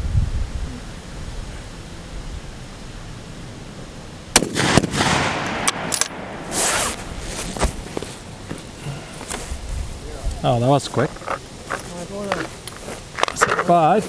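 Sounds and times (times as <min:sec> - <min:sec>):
rifle shots: 0:04.3 - 0:06.9.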